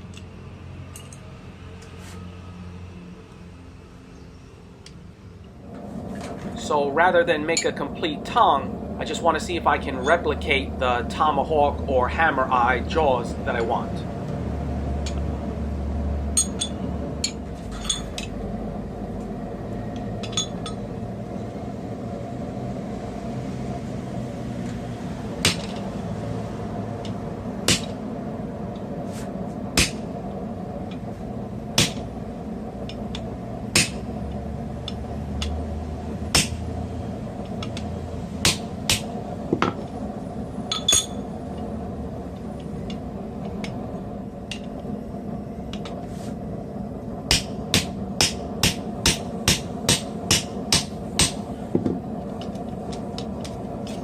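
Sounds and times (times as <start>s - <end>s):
steady hum: 0.0s - 54.0s
hammer striking steel on anvil: 16.4s - 18.2s, 27.7s - 28.0s, 29.8s - 30.0s, 31.8s - 32.0s, 33.7s - 34.0s, 36.3s - 36.6s, 38.4s - 39.8s, 47.3s - 51.4s.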